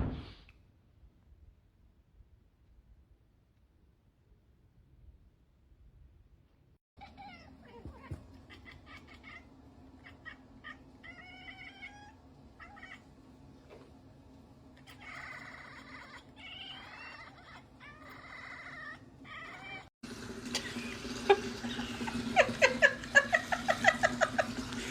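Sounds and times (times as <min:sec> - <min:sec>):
cat meowing: 0:07.0 - 0:13.1, 0:14.8 - 0:19.9.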